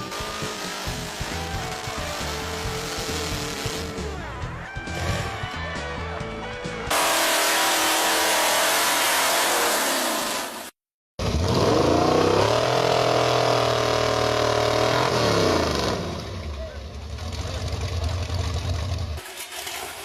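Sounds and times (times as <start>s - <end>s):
chainsaw revving: 0.0s - 4.1s, 6.9s - 16.2s.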